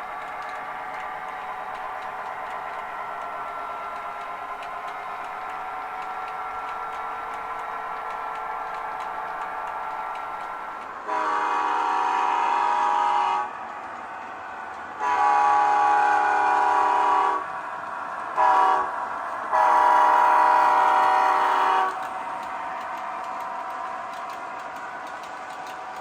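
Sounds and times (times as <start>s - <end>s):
model train air horn blasts: 11.1s - 13.5s, 15.0s - 17.4s, 18.4s - 18.9s, 19.5s - 22.0s.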